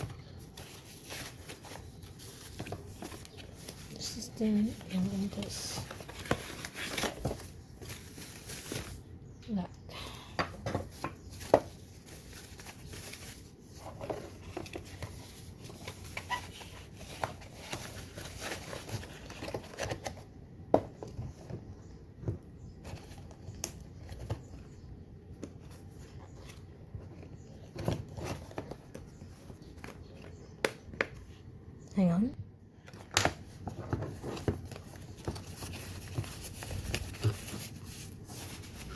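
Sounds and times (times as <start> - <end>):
packaging rustling: 0.3 - 9.1, 10.9 - 20.2, 32.9 - 38.9.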